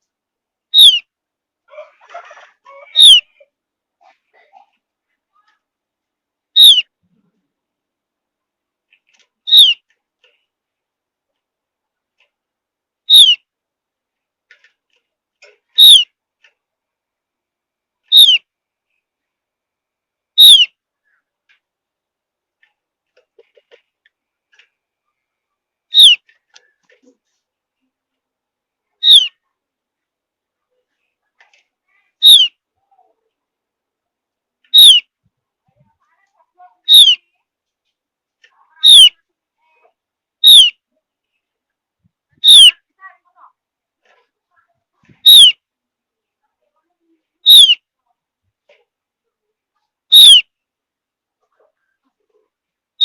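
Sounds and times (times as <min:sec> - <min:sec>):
faint bird chirps: 0:00.7 - 0:01.1, 0:02.7 - 0:03.5, 0:06.5 - 0:07.4, 0:09.1 - 0:09.9, 0:13.1 - 0:13.5, 0:15.7 - 0:16.2, 0:18.0 - 0:19.0, 0:20.4 - 0:21.3, 0:24.5 - 0:27.2, 0:28.9 - 0:29.5, 0:31.9 - 0:33.1, 0:34.7 - 0:35.1, 0:36.8 - 0:37.4, 0:38.7 - 0:39.2, 0:40.4 - 0:41.5, 0:42.4 - 0:42.8, 0:45.2 - 0:45.6, 0:47.4 - 0:47.9, 0:50.1 - 0:50.5
bird calls sliding downward: 0:00.8 - 0:01.0, 0:03.0 - 0:03.2, 0:13.1 - 0:13.4, 0:15.8 - 0:16.0, 0:18.1 - 0:18.4, 0:20.4 - 0:20.7, 0:25.9 - 0:26.2, 0:29.0 - 0:29.3, 0:32.2 - 0:32.5, 0:34.7 - 0:35.0, 0:36.9 - 0:37.2, 0:38.8 - 0:39.1, 0:40.4 - 0:40.7, 0:42.4 - 0:42.7, 0:45.2 - 0:45.6, 0:47.5 - 0:47.8, 0:50.1 - 0:50.4.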